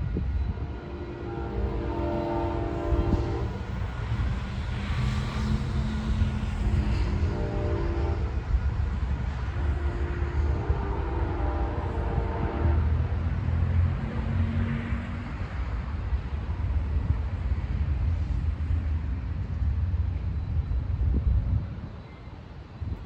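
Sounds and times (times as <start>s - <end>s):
train rumbling past: 0.0s - 23.0s
train horn chord: 0.5s - 3.8s, 5.8s - 8.6s, 9.5s - 13.1s.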